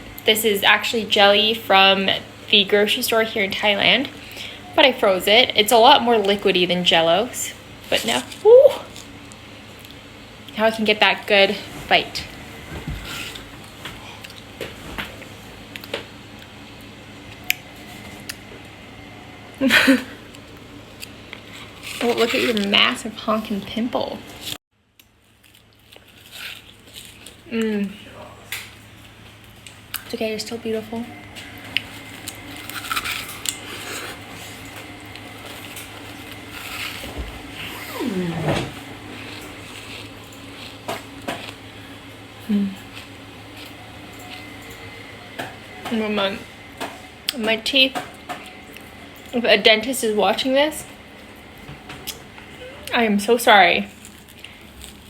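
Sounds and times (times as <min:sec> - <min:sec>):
chewing crunchy clicks and squishes: 0:08.0 - 0:10.6, 0:24.9 - 0:27.5, 0:31.5 - 0:37.1, 0:53.9 - 0:55.0
chewing and crunching: 0:20.3 - 0:22.8, 0:25.0 - 0:27.6, 0:31.4 - 0:38.2, 0:39.1 - 0:41.9, 0:53.9 - 0:55.0.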